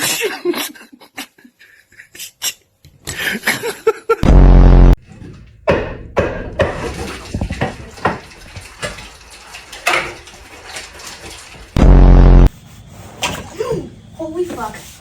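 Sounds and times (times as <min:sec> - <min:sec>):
hard objects knocking and clinking: 0:05.0 - 0:10.4
loud harsh buzz: 0:11.8 - 0:12.5.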